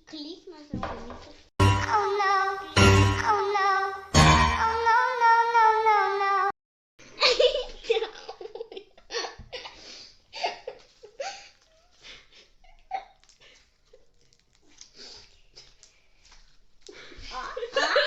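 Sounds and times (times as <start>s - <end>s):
girls giggling and laughing: 7.1s - 14.2s, 16.9s - 18.0s.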